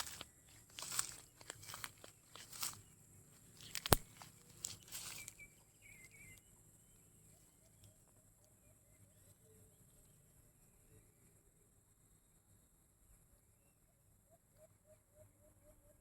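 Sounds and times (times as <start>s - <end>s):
faint outdoor background: 0.0s - 16.0s
brief scuffing noises: 3.6s - 5.4s.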